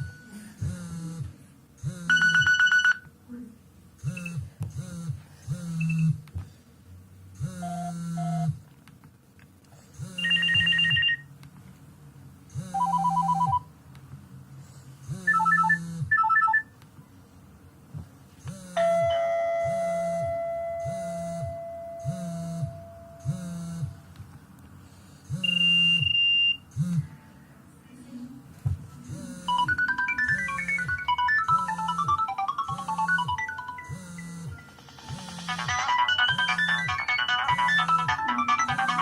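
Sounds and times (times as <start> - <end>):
synthesized ringtone tune: 2.1 - 3.0, 10.2 - 11.2, 12.7 - 13.7, 15.2 - 16.7, 18.8 - 23.0, 29.3 - 39.0
short electronic beeps: 4.0 - 4.4, 10.0 - 11.2, 25.3 - 26.7.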